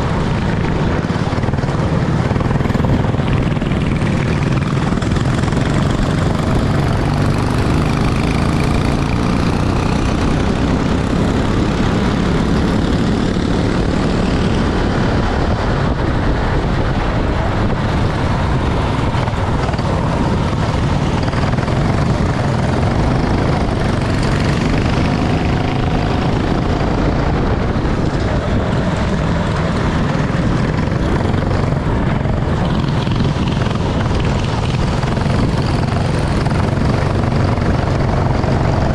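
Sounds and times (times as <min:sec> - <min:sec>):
steady dense noise: 0:00.0 - 0:09.1
racing kart engine: 0:00.0 - 0:38.9.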